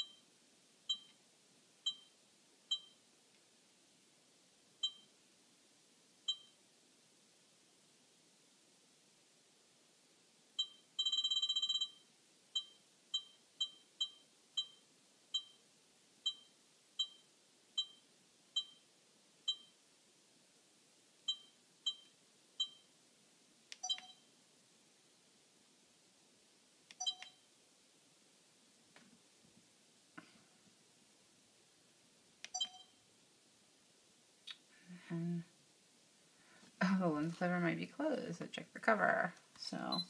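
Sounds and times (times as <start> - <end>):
camcorder beeping: 23.8 - 24.2, 27.0 - 27.4, 32.5 - 33.0.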